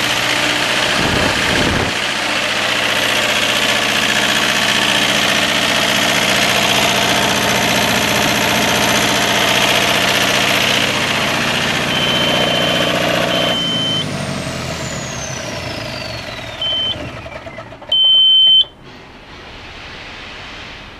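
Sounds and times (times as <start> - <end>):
turbocharger whine spinning down: 0.0 - 18.2
diesel generator engine running: 0.0 - 20.6
high electronic beeps: 11.8 - 14.1, 16.5 - 17.0.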